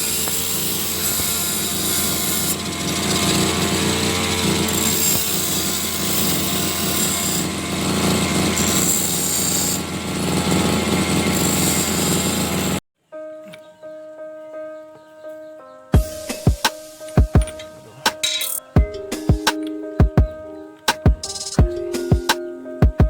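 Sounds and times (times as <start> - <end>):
power tool running: 0.0 - 12.8.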